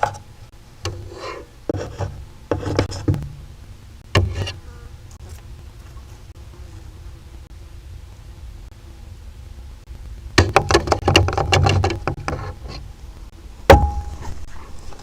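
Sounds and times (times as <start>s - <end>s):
loud ringing knock: 13.7s - 14.2s.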